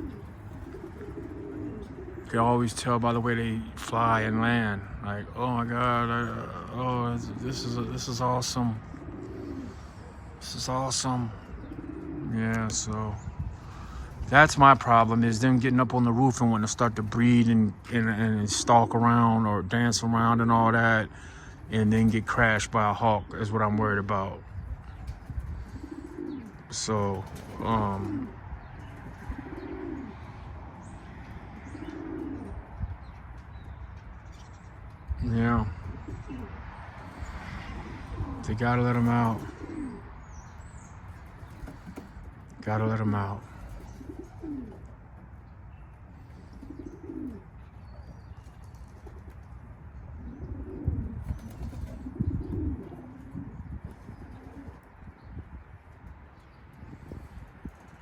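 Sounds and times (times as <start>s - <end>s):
pigeons cooing: 0.0s - 58.0s
wings flapping: 51.2s - 53.2s.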